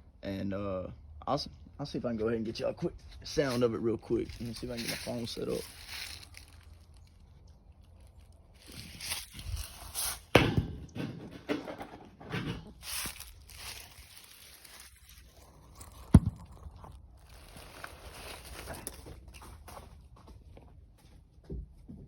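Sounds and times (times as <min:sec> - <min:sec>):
footsteps: 0:02.8 - 0:07.2, 0:08.0 - 0:11.4, 0:12.0 - 0:22.0
sharp thump: 0:10.3 - 0:11.1.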